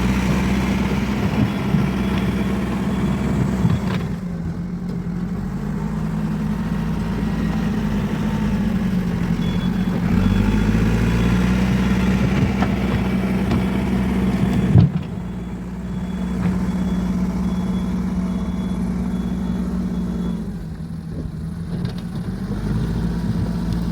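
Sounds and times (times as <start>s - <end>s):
diesel engine running: 0.0s - 23.9s
faint high beeping: 9.4s - 12.2s, 14.6s - 20.4s.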